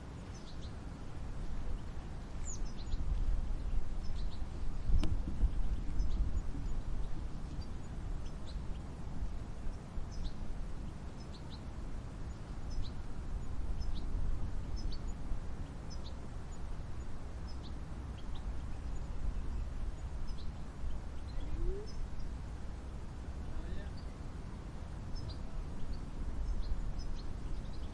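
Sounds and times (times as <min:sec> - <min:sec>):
low rumbling background noise: 0:00.0 - 0:27.9
small birds chirping: 0:00.0 - 0:27.9.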